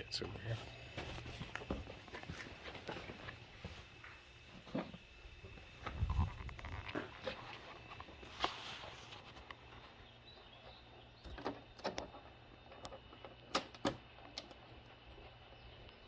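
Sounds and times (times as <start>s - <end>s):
rustle: 5.8s - 10.0s.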